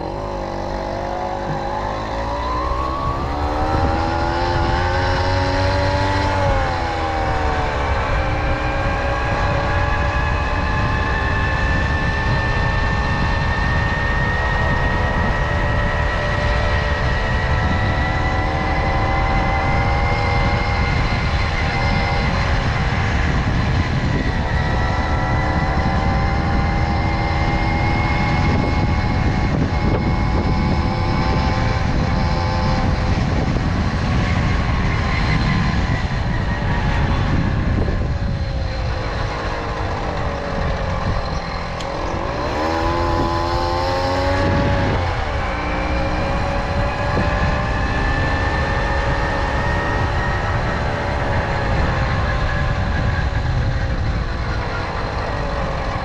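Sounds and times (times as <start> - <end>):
moped engine running: 0.0 - 8.6, 37.0 - 56.0.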